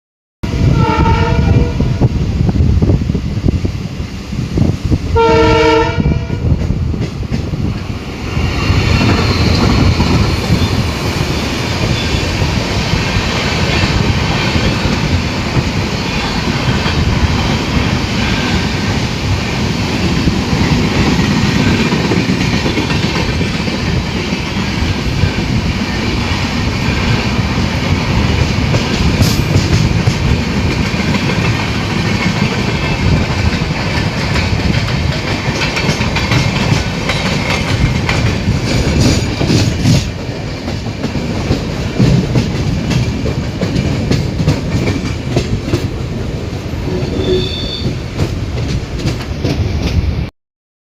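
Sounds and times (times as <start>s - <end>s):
diesel locomotive horn: 0.4s - 2.1s, 5.2s - 6.6s, 46.8s - 48.0s
train wheels rumbling on rails: 0.4s - 50.3s.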